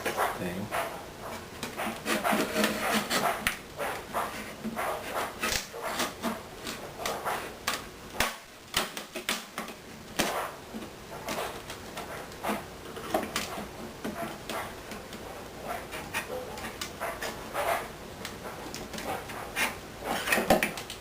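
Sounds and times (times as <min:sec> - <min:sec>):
tools scraping wood: 0:00.0 - 0:07.6, 0:09.0 - 0:17.9, 0:18.5 - 0:20.8
hand tools clicking and tapping wood: 0:00.0 - 0:21.0.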